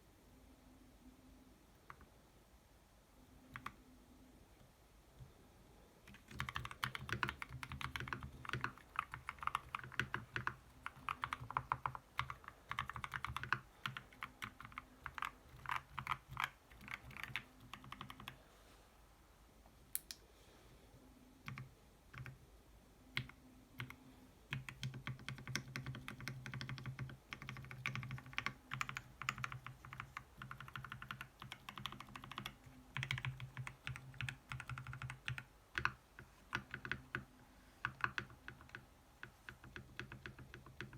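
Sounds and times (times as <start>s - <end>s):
mechanical keyboard typing: 3.5s - 3.8s, 6.1s - 18.4s, 21.4s - 22.4s, 23.1s - 40.9s.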